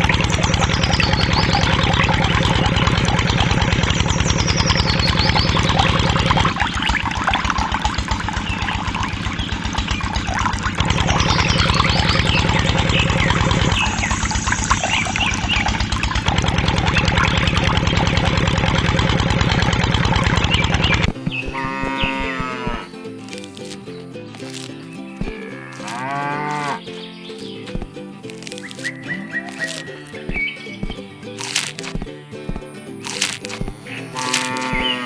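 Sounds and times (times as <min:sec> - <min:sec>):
engine running: 0:00.0 - 0:35.0.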